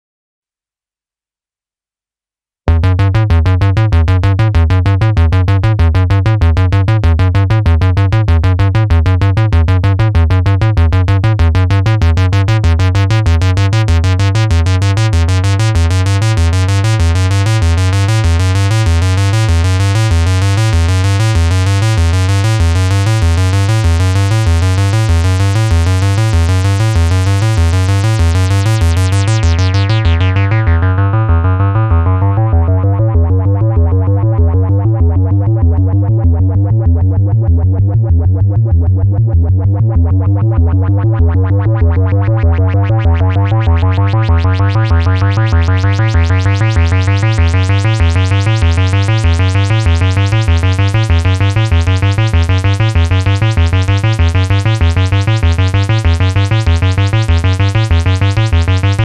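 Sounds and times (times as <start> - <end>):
synthesizer sequence with pulsing bass: 2.7 - 59.0.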